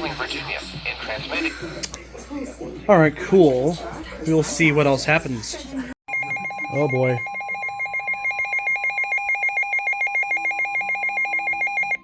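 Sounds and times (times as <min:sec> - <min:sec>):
weather alert radio alarm: 0:06.1 - 0:12.0.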